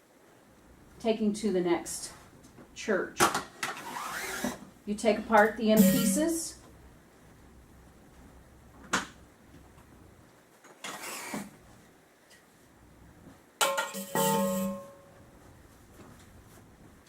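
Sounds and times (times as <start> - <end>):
short scrape: 3.8 - 4.6, 10.8 - 11.5
metal clatter with ringing: 13.6 - 15.0.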